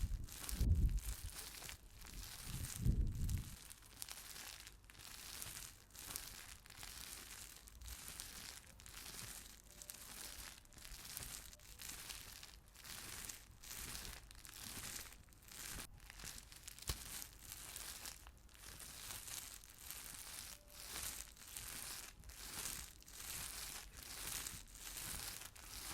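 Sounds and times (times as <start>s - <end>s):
crystal roller rasping on stone: 17.2s - 25.9s.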